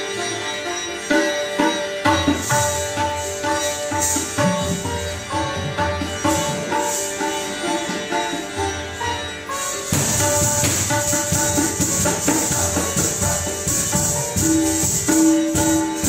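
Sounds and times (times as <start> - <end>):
plucked string instrument: 0.0 - 16.0
hand drum strokes: 9.8 - 16.0.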